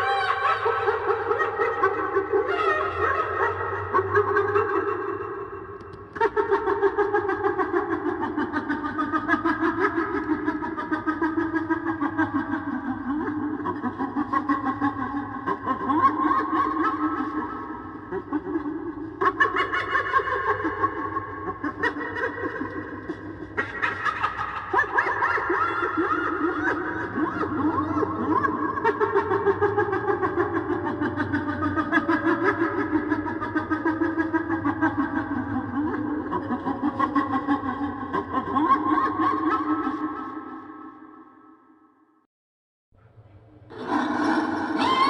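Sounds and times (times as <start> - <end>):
hyena cackling: 43.7 - 45.0.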